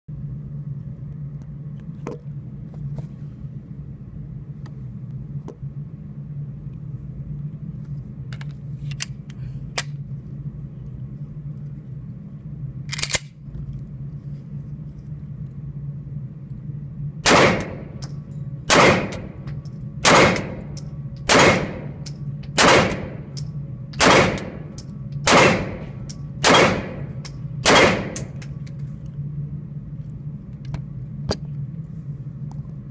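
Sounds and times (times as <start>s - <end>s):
steady low hum: 0.1s - 32.9s
gunshots: 17.3s - 17.9s, 18.7s - 19.3s, 20.0s - 20.6s, 21.3s - 21.9s, 22.6s - 23.2s, 24.0s - 24.6s, 25.3s - 25.8s, 26.4s - 28.3s.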